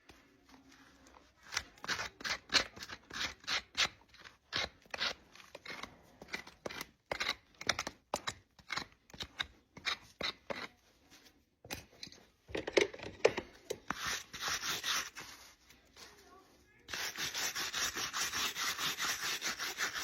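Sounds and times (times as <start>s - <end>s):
hoof knife scraping horse hoof: 1.4s - 11.4s, 13.6s - 15.6s, 16.9s - 20.0s.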